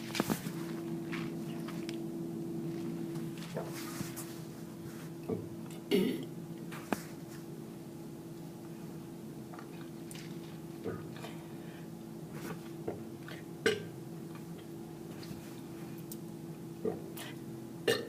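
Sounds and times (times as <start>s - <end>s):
person gulping and burping: 5.2s - 6.4s, 12.9s - 14.0s, 16.8s - 18.0s.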